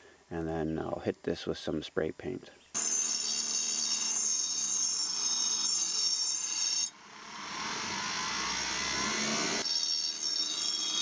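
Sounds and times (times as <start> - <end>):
bench grinder grinding metal: 2.8 - 11.0.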